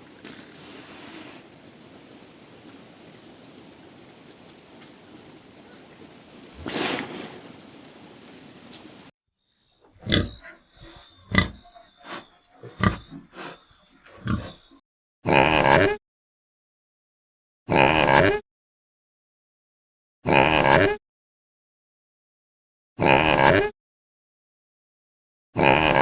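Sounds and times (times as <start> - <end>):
animal call: 9.8 - 16.0
animal grunts: 9.9 - 16.0, 17.7 - 18.4, 20.3 - 21.0, 23.0 - 23.7, 25.6 - 26.0.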